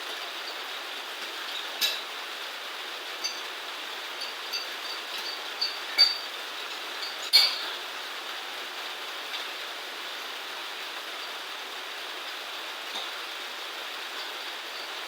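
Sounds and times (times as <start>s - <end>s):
steady hiss: 0.0s - 15.0s
sharp ringing clinks: 4.2s - 6.3s.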